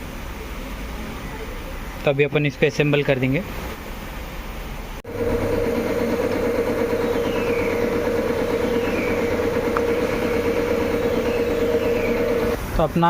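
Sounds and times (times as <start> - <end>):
motor humming: 5.0 - 12.6.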